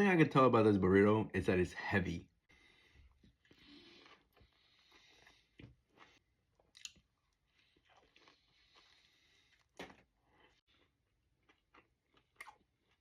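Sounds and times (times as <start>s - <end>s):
close chewing with crunches: 3.1s - 13.0s.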